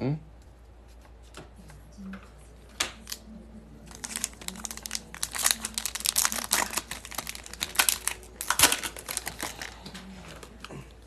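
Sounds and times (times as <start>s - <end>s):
plastic wrapper crinkling and tearing: 2.9s - 3.2s, 3.8s - 10.7s.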